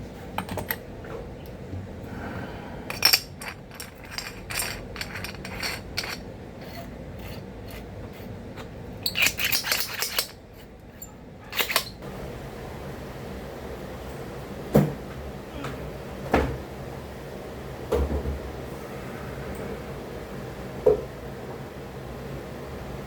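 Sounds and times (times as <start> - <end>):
metal parts clicking and rattling: 2.9 - 12.0.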